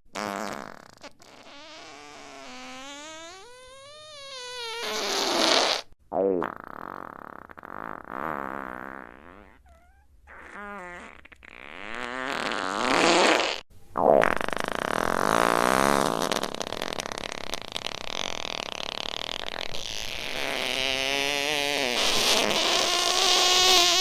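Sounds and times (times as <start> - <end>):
fart sound effects: 0.1 - 24.0.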